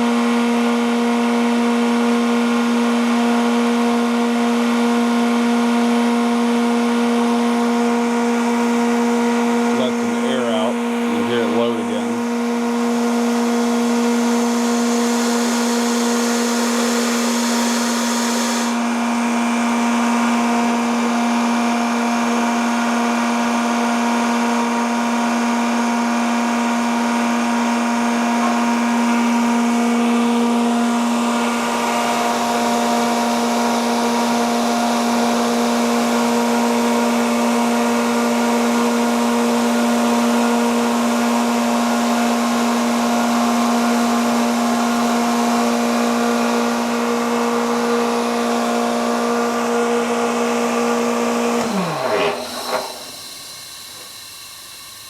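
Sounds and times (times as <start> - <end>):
air compressor humming: 6.3 - 23.4, 24.2 - 55.0
high hissing: 51.9 - 55.0.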